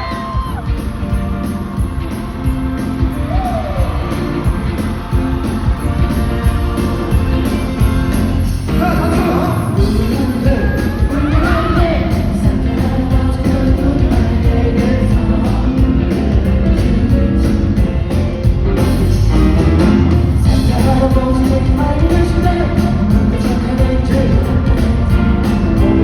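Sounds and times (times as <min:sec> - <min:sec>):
live pop band playing: 0:00.0 - 0:26.0
man singing: 0:08.6 - 0:18.2, 0:18.8 - 0:26.0.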